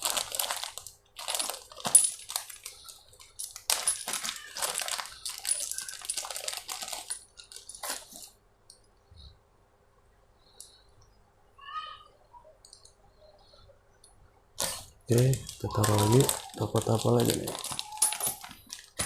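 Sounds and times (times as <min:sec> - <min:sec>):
plastic packaging rustling: 0:00.0 - 0:08.4, 0:14.6 - 0:19.0
small hard parts clicking: 0:00.0 - 0:08.8, 0:14.6 - 0:19.0.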